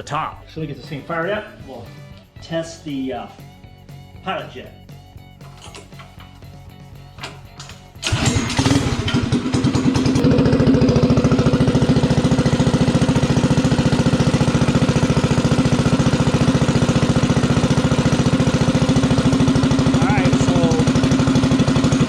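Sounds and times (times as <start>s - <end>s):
mini bike engine idling: 7.2s - 22.0s.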